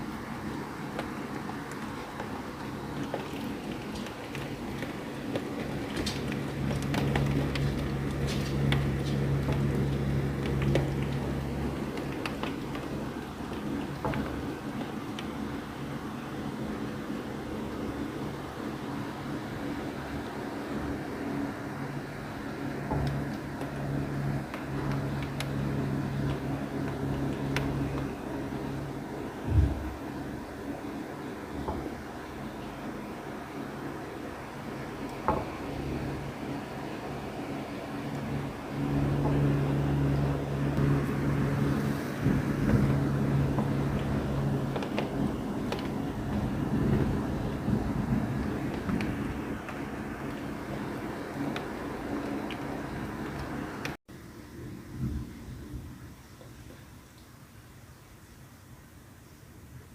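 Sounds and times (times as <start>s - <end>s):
steady low hum: 0.0s - 56.7s
rain falling: 0.0s - 59.9s
steady low rumble: 21.0s - 56.2s.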